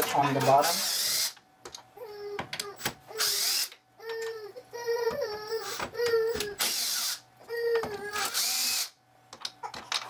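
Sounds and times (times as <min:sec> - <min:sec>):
cordless drill motor whine: 0:06.6 - 0:07.2, 0:08.1 - 0:09.0.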